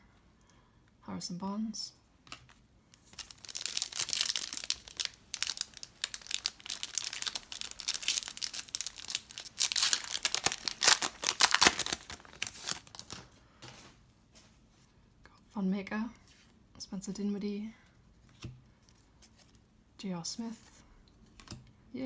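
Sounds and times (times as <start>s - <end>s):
plastic wrapper crinkling and tearing: 3.0s - 13.3s.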